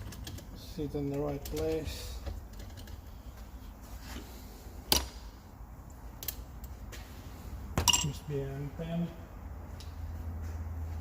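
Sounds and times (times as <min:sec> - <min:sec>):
light metallic clicks of engine parts: 0:00.0 - 0:03.5, 0:05.8 - 0:07.0
low steady hum: 0:00.0 - 0:11.0.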